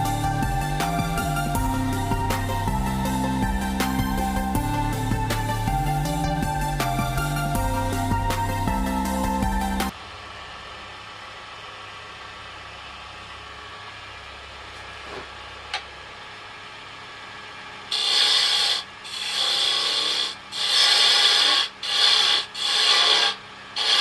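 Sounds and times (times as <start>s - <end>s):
harsh rasping on wood: 17.9s - 24.0s
wood lathe humming: 17.9s - 24.0s.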